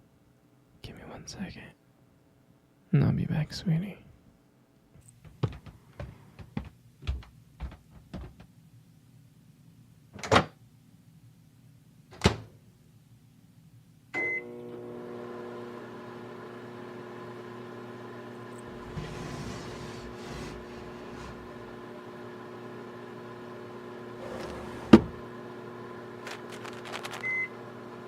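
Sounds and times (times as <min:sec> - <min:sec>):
faint footsteps: 0:05.0 - 0:08.4
microwave oven beep: 0:14.1 - 0:15.0, 0:27.2 - 0:27.8
microwave oven humming: 0:14.1 - 0:28.0.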